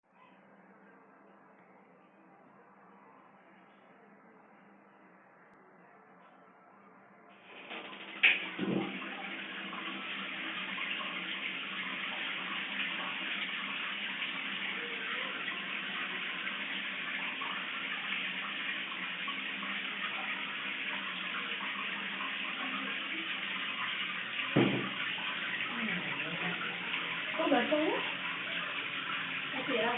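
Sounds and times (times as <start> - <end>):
water running from a tap: 7.4 - 29.9.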